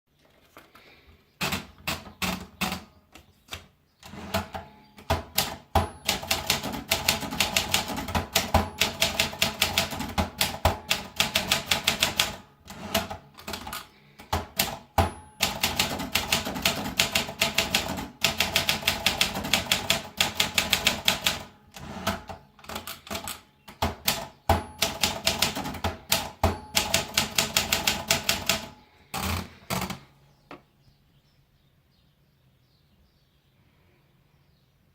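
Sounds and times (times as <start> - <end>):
typewriter keys clacking: 1.4 - 2.8, 3.5 - 30.0
typewriter bell ring: 5.8 - 6.6, 8.4 - 9.6, 14.9 - 16.3, 24.5 - 30.0.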